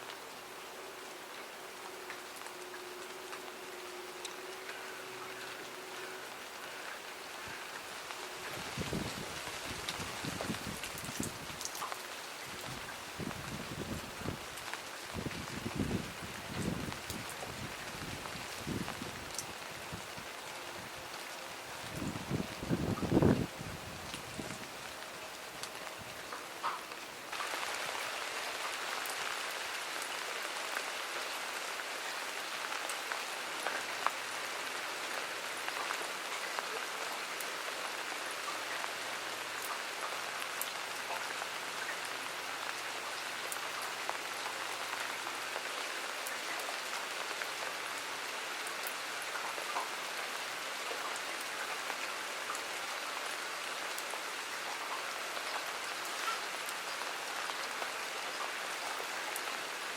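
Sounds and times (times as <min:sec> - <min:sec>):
steady rain: 0:00.0 - 0:59.9
raindrops ticking: 0:01.0 - 0:31.3.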